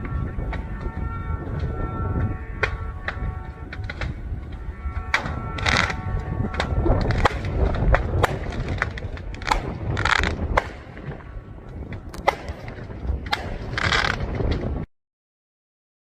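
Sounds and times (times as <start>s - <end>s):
steady low rumble: 0.0s - 14.9s
fireworks cracking and popping: 5.2s - 14.8s.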